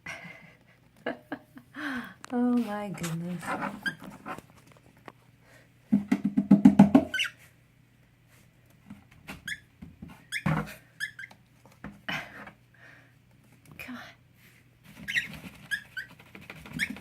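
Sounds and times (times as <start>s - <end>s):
cockatiel chirping: 15.0s - 17.0s.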